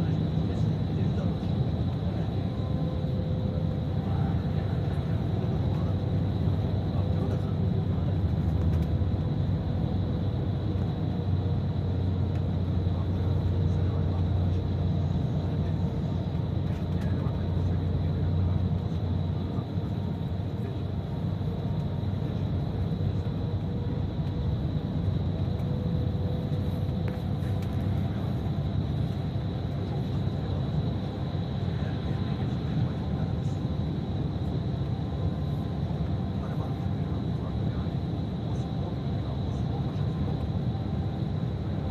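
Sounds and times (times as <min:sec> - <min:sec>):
bus engine and road rumble: 0:00.0 - 0:41.9.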